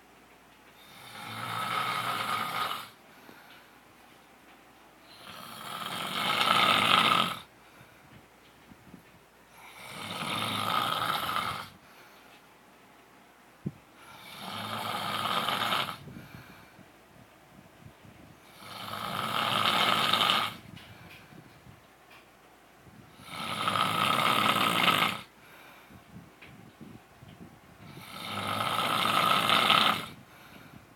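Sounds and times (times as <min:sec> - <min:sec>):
man snoring: 0:00.8 - 0:03.0, 0:05.1 - 0:07.5, 0:09.6 - 0:11.8, 0:14.0 - 0:16.5, 0:18.4 - 0:20.7, 0:23.1 - 0:25.4, 0:27.9 - 0:30.4.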